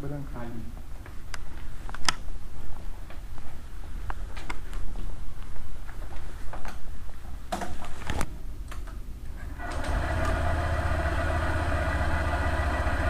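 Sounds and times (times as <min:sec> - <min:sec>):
scooter engine idling: 0:09.6 - 0:13.0.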